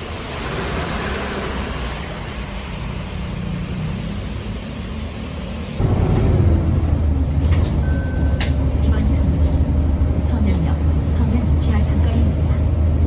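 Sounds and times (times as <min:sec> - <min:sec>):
low rumble of road traffic: 0:00.0 - 0:13.0.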